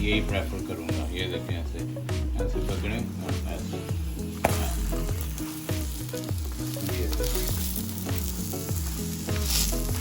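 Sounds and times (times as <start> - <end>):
background music: 0.0 - 10.0
flatbread sizzling in oil: 2.0 - 10.0.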